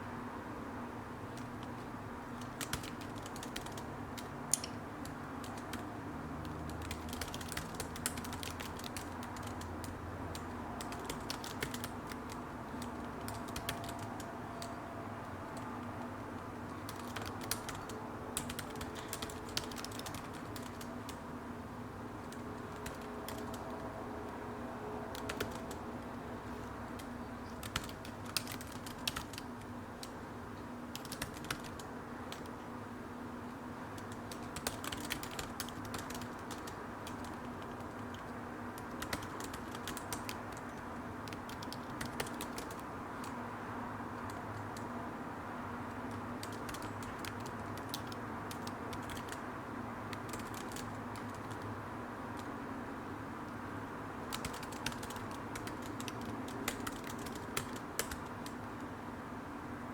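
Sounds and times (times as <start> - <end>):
low background hum: 0.0 - 59.9
keyboard key clicks: 16.8 - 21.2, 34.0 - 43.4, 46.1 - 49.4, 50.1 - 51.7, 54.3 - 58.6.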